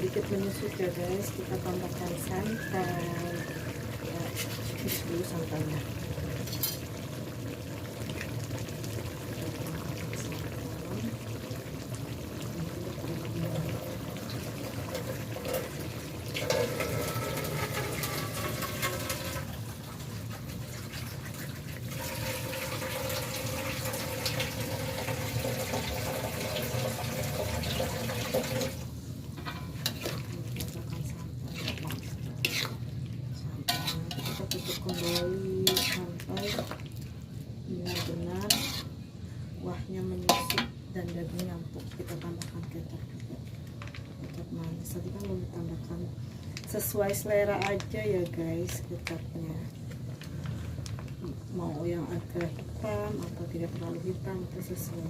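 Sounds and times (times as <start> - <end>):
tap running water: 22.0 - 28.8.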